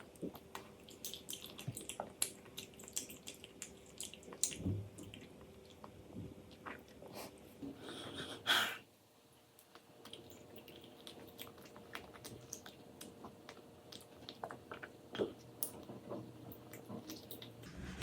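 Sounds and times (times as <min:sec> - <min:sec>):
child chewing food: 0:00.0 - 0:08.4, 0:09.4 - 0:17.9
brief louder noise: 0:17.6 - 0:18.0.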